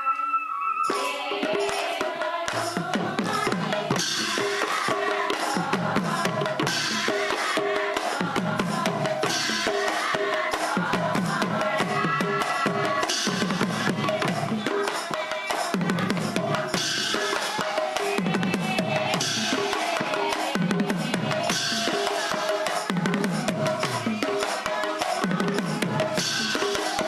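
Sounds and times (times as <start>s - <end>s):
drum strokes: 0.8s - 27.0s
group of voices singing hymns: 0.8s - 27.0s
hand cymbals clashing: 0.9s - 8.2s, 8.9s - 18.3s, 23.8s - 27.0s.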